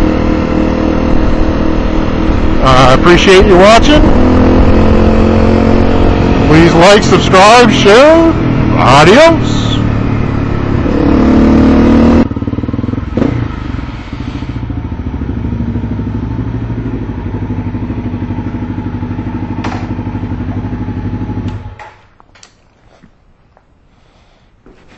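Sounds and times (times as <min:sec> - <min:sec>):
motorcycle engine revving and idling: 0:00.0 - 0:22.0
small clicks and knocks: 0:21.5 - 0:22.7.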